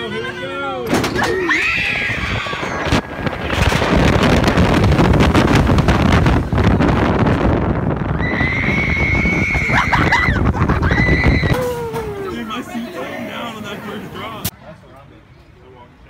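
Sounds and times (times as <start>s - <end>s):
wind buffeting microphone: 1.1s - 12.7s.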